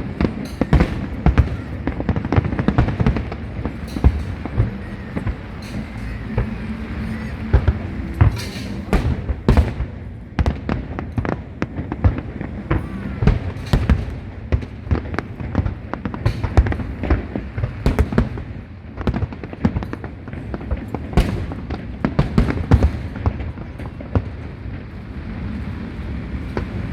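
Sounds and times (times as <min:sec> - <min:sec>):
fireworks bangs and crackles: 0:00.0 - 0:26.9.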